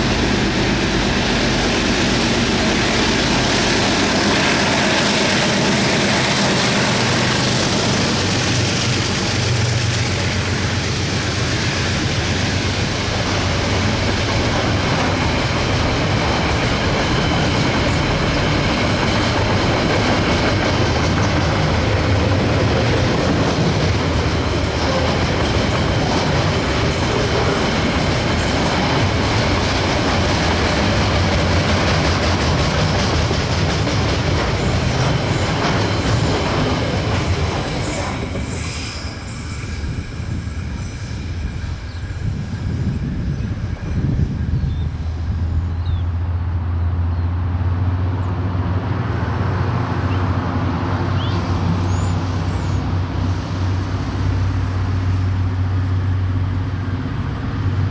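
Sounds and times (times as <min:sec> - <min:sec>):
train wagons clattering: 0:00.0 - 0:46.0
low train rumble: 0:00.0 - 0:57.9
train wheel squeal: 0:01.8 - 0:47.2, 0:50.0 - 0:55.2.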